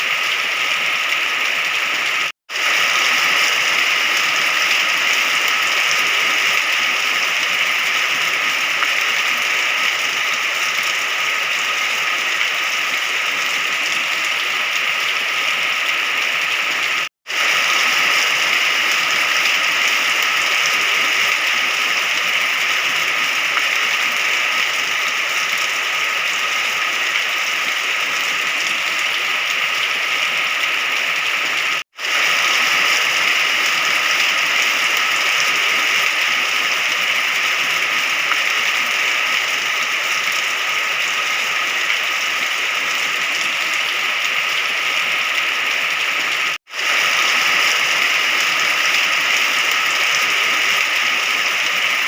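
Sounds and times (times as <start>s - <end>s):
steady rain hiss: 0.0s - 52.0s.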